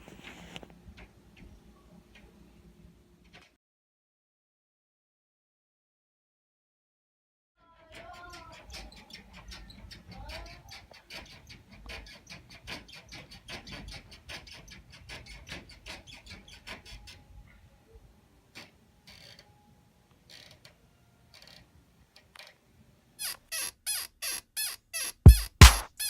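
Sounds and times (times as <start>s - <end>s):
bedsprings squeaking through ceiling: 8.2s - 17.2s, 23.2s - 26.0s.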